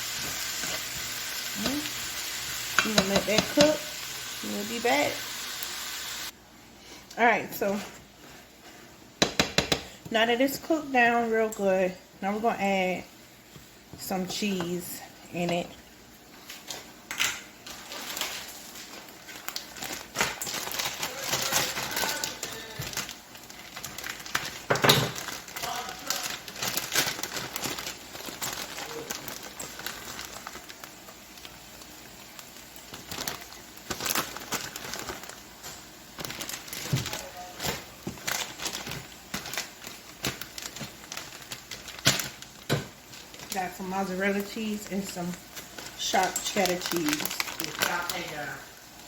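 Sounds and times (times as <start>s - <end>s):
kitchen clicks and knocks: 9.2s - 9.9s, 24.7s - 25.2s
plastic bag crinkling: 17.6s - 49.0s.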